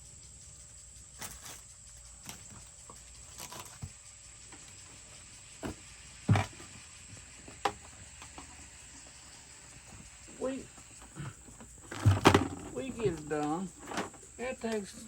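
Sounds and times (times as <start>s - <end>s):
thump on plastic bucket: 5.6s - 6.8s, 11.9s - 14.2s
plastic parts knocking and clicking: 11.6s - 14.2s.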